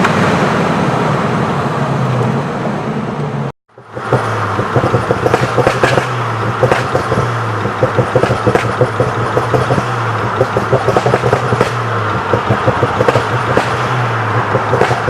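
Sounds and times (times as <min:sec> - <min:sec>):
car engine droning: 0:00.0 - 0:15.0
exhaust crackles: 0:03.8 - 0:15.0.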